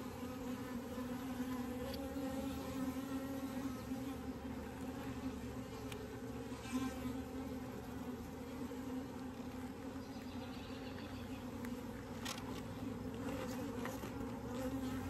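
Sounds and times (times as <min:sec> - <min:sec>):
bees buzzing: 0:00.0 - 0:15.0.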